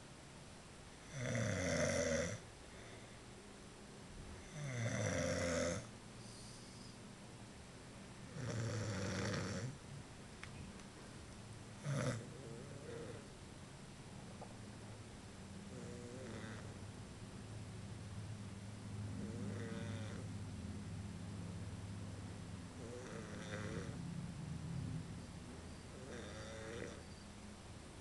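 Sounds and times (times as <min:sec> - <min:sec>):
man snoring: 0:01.0 - 0:02.4, 0:04.4 - 0:05.9, 0:08.3 - 0:09.8, 0:11.8 - 0:13.2, 0:15.7 - 0:16.7, 0:19.2 - 0:20.2, 0:22.8 - 0:24.0, 0:26.0 - 0:27.0.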